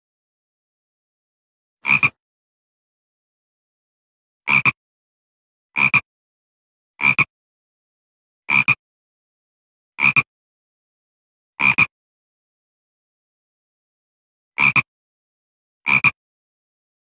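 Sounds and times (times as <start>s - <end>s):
frog croaking: 1.8s - 2.2s, 4.5s - 4.8s, 5.8s - 6.0s, 7.0s - 7.3s, 8.5s - 8.8s, 10.0s - 10.3s, 11.6s - 11.9s, 14.6s - 14.9s, 15.9s - 16.2s.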